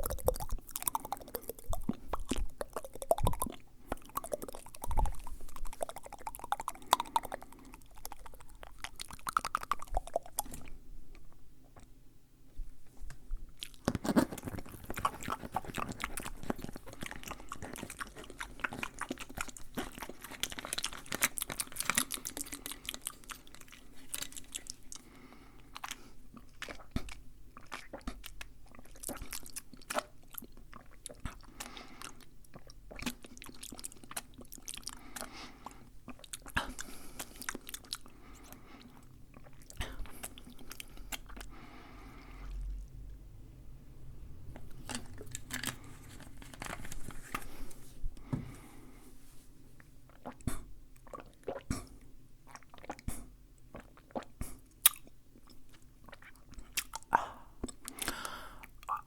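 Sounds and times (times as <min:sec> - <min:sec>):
mouth clicks and smacks: 0:00.0 - 0:12.0, 0:13.0 - 0:25.1, 0:25.7 - 0:43.0, 0:50.1 - 0:59.0.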